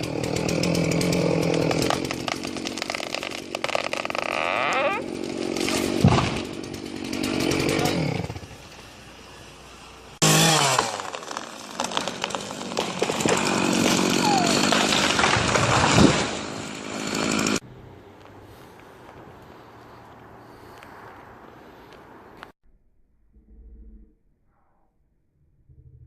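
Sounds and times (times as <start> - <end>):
chainsaw revving: 0.0 - 17.6.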